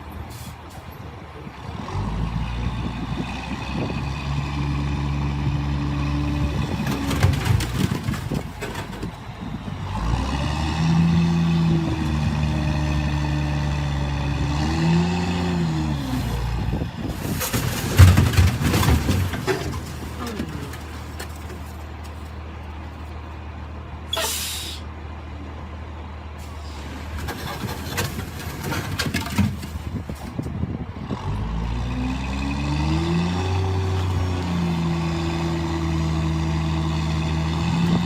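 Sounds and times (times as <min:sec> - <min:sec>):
heavy vehicle engine revving: 0:01.7 - 0:21.4, 0:30.6 - 0:38.0.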